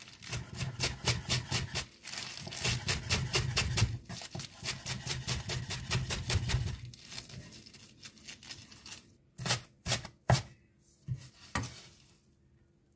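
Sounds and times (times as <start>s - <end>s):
knife chopping greens on board: 0.3s - 6.8s, 9.4s - 10.6s.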